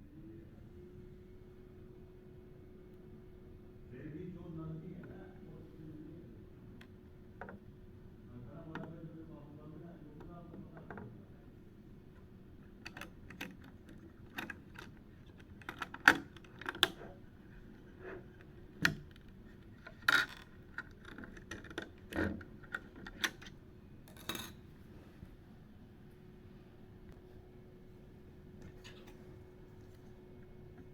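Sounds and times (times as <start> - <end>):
small hard parts clicking: 12.8 - 17.0, 18.8 - 23.5.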